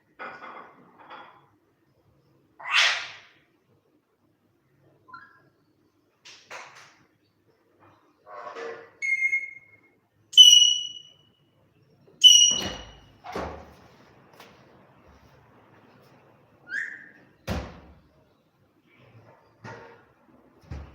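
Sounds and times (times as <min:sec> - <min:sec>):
parrot whistles: 0:09.0 - 0:11.2, 0:12.2 - 0:13.1, 0:16.6 - 0:17.2
parrot rising chirp: 0:10.4 - 0:11.1, 0:16.6 - 0:17.2.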